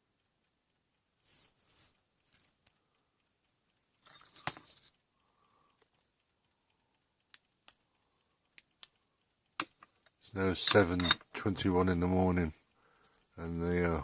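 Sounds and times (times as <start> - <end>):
small clicks: 1.9 - 10.3.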